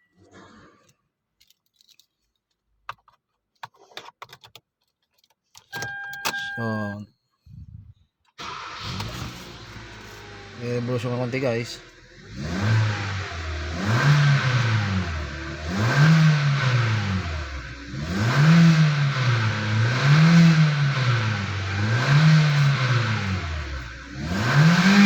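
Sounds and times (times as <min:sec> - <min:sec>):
car engine revving: 0:08.4 - 0:25.0.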